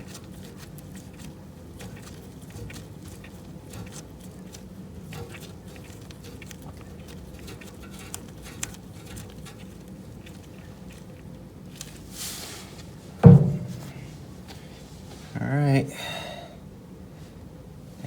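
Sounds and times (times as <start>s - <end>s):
loud thump: 13.2s - 14.1s.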